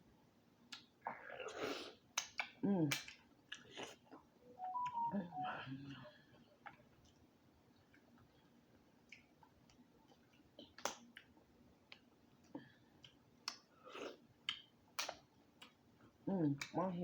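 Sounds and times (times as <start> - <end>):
wet eating smacks and clicks: 2.1 - 4.0, 9.0 - 13.7, 14.4 - 15.9, 16.5 - 16.8.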